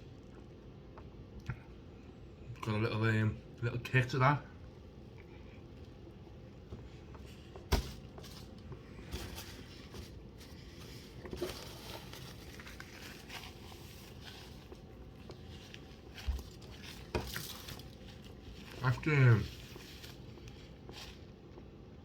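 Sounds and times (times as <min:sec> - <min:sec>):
low background hum: 0:00.0 - 0:22.0
person chewing food: 0:12.4 - 0:18.7.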